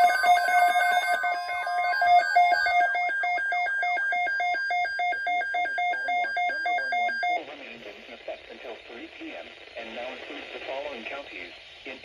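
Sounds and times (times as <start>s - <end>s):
rapid electronic alarm beeps: 0.0s - 7.5s.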